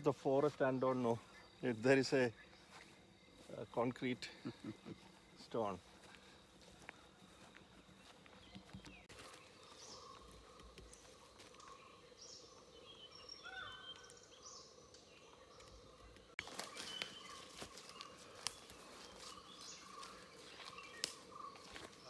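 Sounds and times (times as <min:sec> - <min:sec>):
birds chirping: 0:00.0 - 0:22.0
sharp clicks and crackles: 0:21.0 - 0:21.2.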